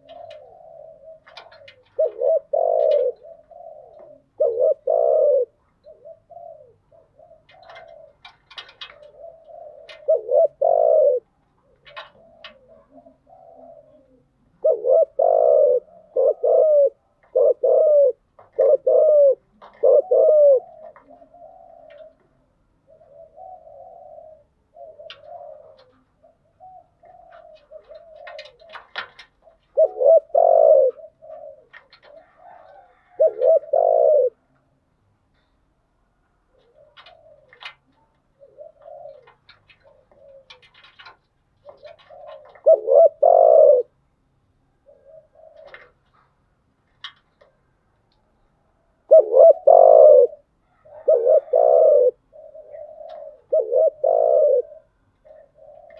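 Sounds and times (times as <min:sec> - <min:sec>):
doves cooing: 0:00.0 - 0:34.8, 0:35.4 - 0:55.9.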